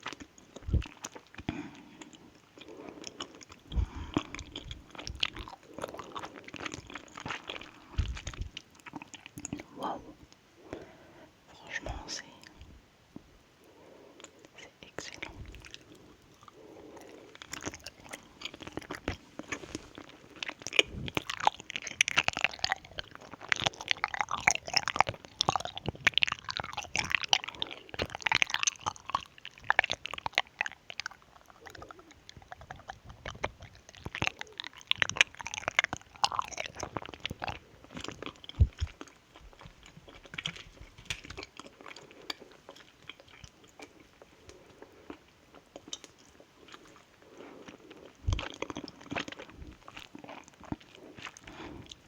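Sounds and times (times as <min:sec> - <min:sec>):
chewing and crunching sweets: 0:00.0 - 0:12.7, 0:13.6 - 0:52.0
wet mouth clicks and smacks: 0:20.4 - 0:44.6.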